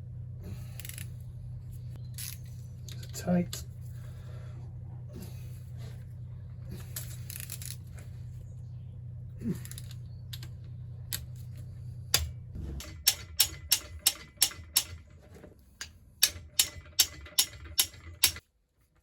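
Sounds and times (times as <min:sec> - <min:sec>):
steady low hum: 0:00.0 - 0:19.0
socket ratchet clicking: 0:12.2 - 0:15.0, 0:15.8 - 0:18.4.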